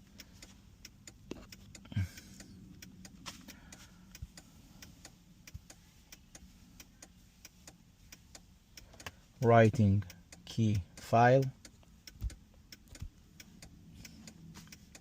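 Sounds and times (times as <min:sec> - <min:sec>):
hazard light flasher ticking: 0:00.0 - 0:15.0.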